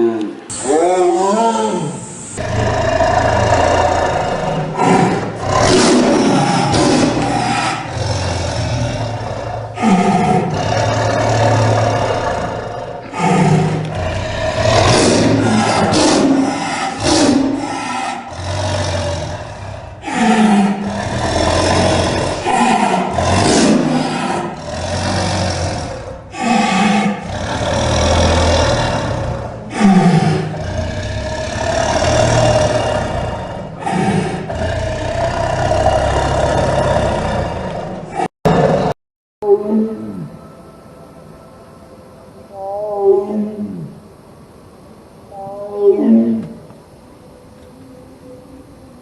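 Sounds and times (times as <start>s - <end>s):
tiger roaring and growling: 2.4s - 40.4s.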